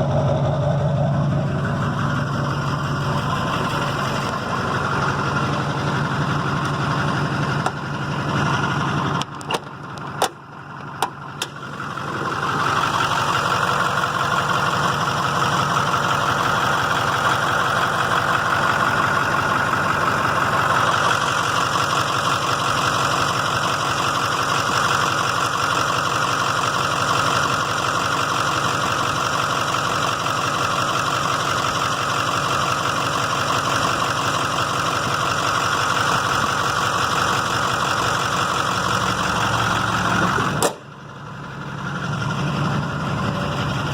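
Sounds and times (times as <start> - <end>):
diesel engine idling: 0.0 - 43.9
sharp click: 40.6 - 40.8.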